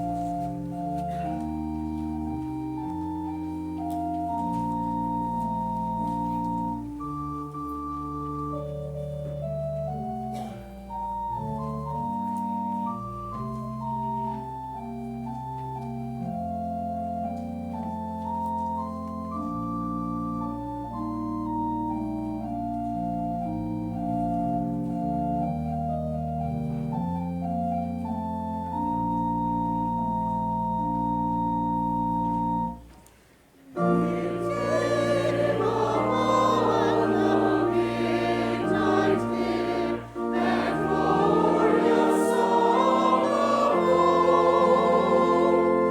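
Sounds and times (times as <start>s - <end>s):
church organ chords: 0.0s - 45.9s
voices singing: 33.8s - 45.9s.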